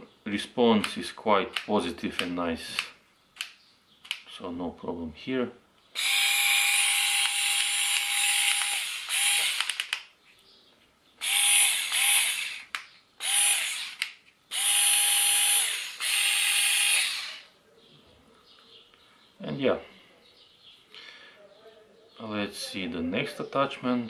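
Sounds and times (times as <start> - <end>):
quick series of clicks: 0.8 - 4.4, 7.2 - 10.2, 11.9 - 14.4
cordless screwdriver motor whirring: 6.0 - 10.0, 11.2 - 17.5.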